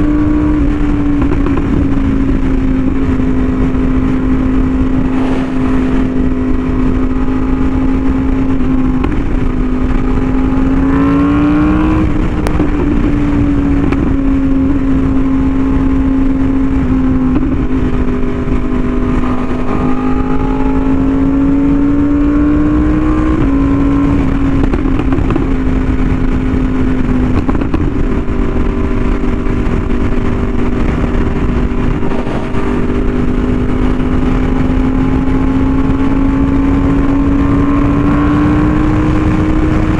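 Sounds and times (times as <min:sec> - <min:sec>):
motorcycle engine cruising: 0:00.0 - 0:39.9
wind rushing across microphone: 0:00.0 - 0:39.9.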